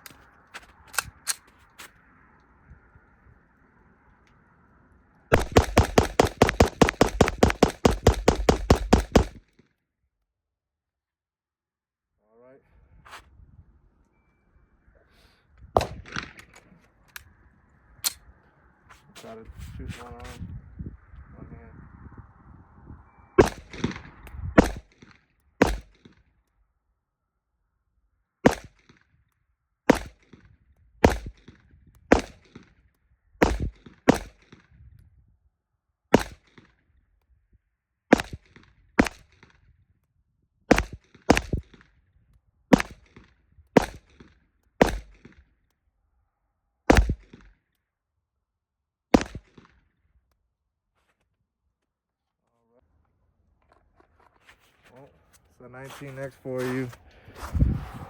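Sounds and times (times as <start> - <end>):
pistol shots: 5.3 - 9.4, 15.8 - 16.6, 23.4 - 26.2, 28.4 - 29.0, 29.9 - 32.8, 33.4 - 34.7, 36.1 - 36.7, 38.1 - 39.5, 40.7 - 41.8, 42.7 - 45.4, 46.9 - 47.5, 49.2 - 49.8.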